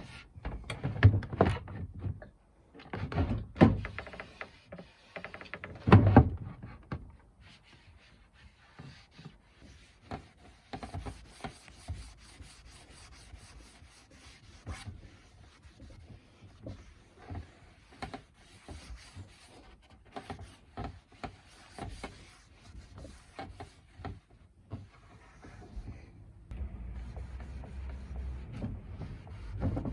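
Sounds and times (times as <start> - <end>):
hand rubbing wooden surface: 7.4 - 29.9.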